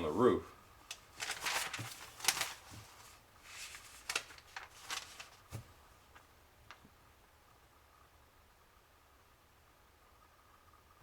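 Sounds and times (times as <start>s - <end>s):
paper pages rustling: 0.8s - 6.8s.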